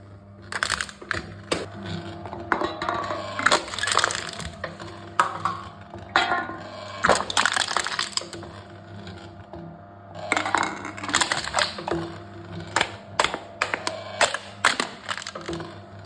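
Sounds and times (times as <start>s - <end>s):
cans being crushed: 0.5s - 1.7s, 3.4s - 5.3s, 7.0s - 8.4s, 10.3s - 12.0s, 12.8s - 15.7s.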